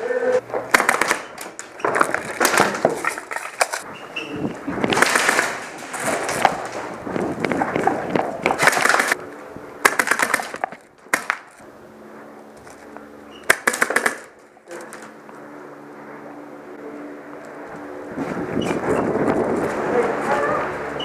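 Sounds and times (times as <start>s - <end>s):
low hum: 0.0s - 21.0s
clattering movement: 0.4s - 9.2s
airsoft guns firing bursts: 0.7s - 1.5s, 4.9s - 6.9s, 8.4s - 9.2s, 9.8s - 11.6s, 13.4s - 14.4s.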